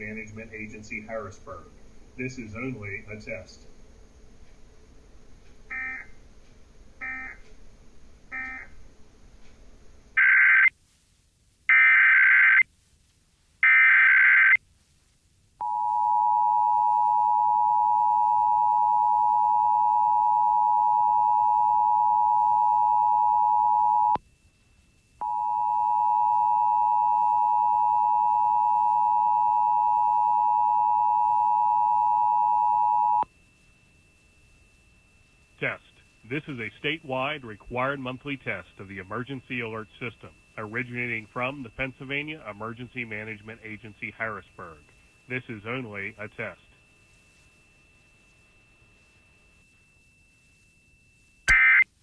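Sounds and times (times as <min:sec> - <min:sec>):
faint short data bursts: 0:15.6 - 0:52.0.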